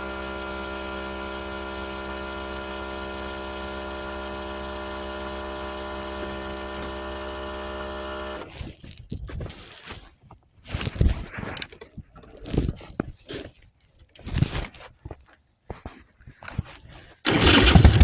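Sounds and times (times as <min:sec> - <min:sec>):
rustling: 0:08.4 - 0:15.2.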